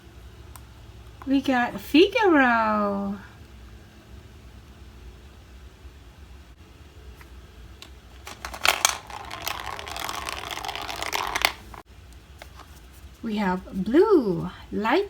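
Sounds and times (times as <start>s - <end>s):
plastic clicks: 7.8s - 11.8s
toy gumball machine rattling: 8.2s - 11.8s.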